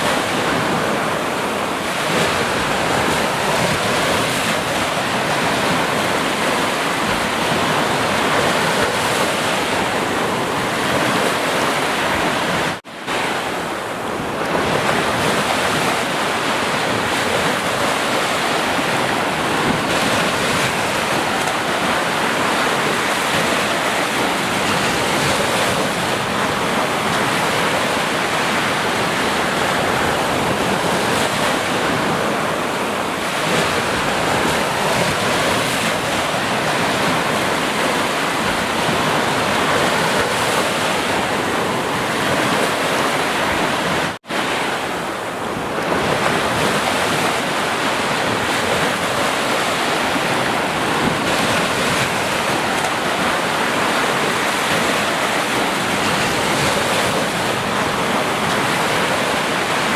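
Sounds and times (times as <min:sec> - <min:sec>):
ocean waves breaking: 0:00.0 - 0:59.9.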